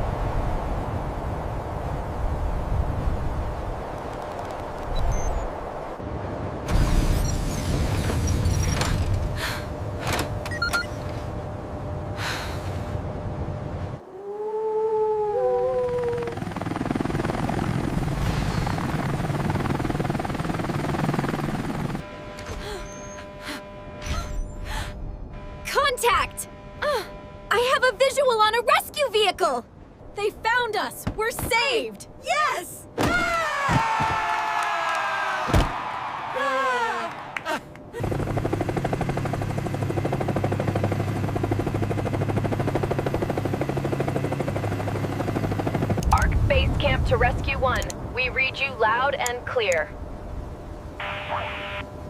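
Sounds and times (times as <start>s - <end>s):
fast-pulsing mechanical drone: 16.2s - 28.5s, 38.0s - 47.1s
wavering tone: 22.0s - 24.7s
vehicle engine: 38.0s - 47.1s.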